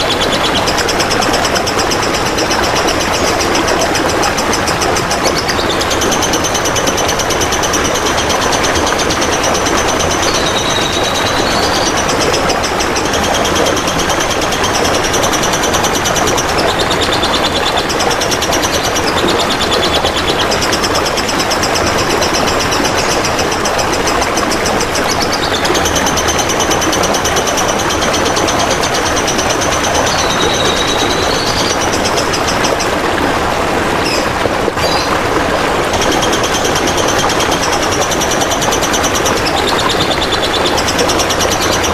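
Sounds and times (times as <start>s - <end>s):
trickling water: 0.0s - 41.9s
buzzy high songbird trill: 9.6s - 12.1s, 30.0s - 32.5s.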